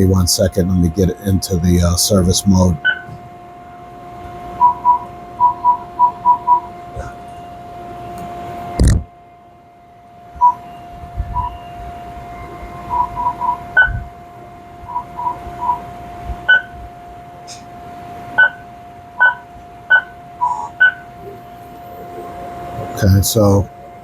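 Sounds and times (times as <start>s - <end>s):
oven hum: 0.0s - 24.0s
control panel beeps: 2.8s - 3.2s, 4.6s - 7.6s, 10.4s - 14.1s, 14.8s - 15.8s, 16.4s - 16.8s, 18.4s - 21.4s.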